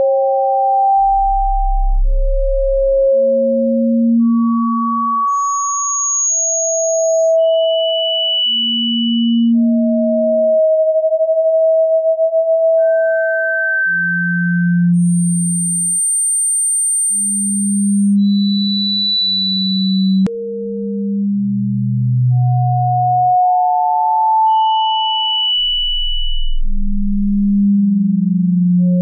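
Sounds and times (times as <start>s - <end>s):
pure sine tones: 0.0s - 29.0s.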